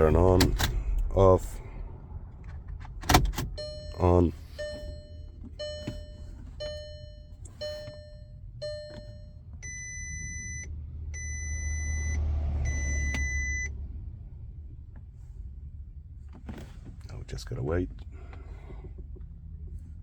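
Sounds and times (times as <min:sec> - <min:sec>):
low hum: 0:00.0 - 0:16.1
electronic warning chime dinging: 0:03.5 - 0:13.7
long high steady beeps: 0:03.5 - 0:13.7.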